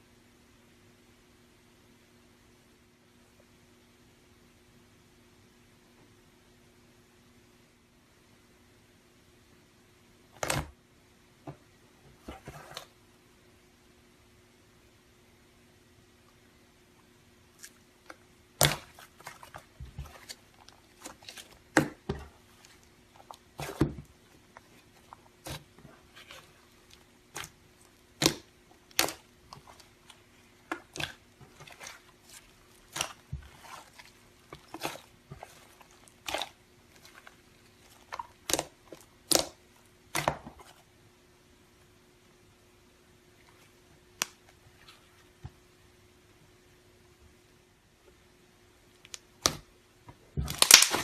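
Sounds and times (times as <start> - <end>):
slime squished by hand: 17.5 - 40.9, 50.3 - 51.0.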